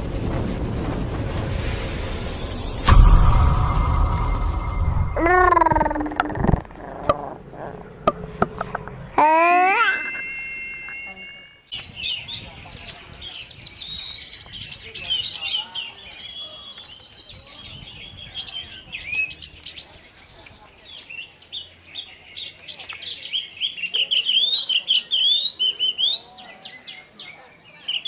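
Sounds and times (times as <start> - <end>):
thrush singing chirps and trills: 9.2 - 20.4.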